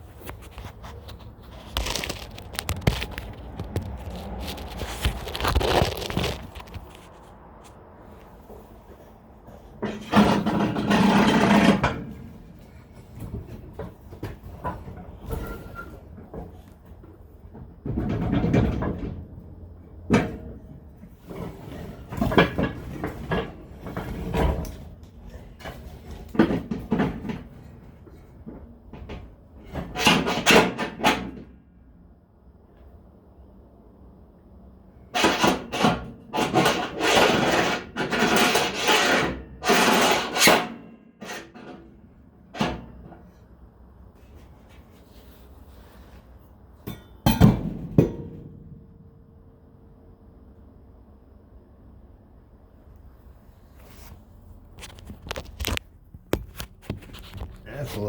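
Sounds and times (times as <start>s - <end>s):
rough scraping strokes: 0.1s - 7.4s
tools and metal parts clanking: 9.7s - 12.4s, 20.1s - 31.4s, 35.1s - 43.4s, 46.8s - 48.4s.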